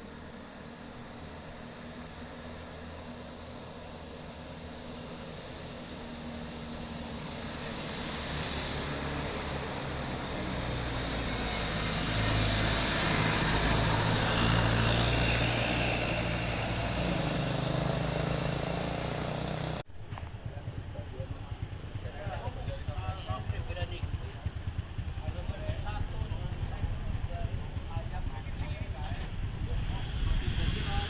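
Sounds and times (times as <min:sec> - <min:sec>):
diesel bus engine: 0:00.0 - 0:19.8.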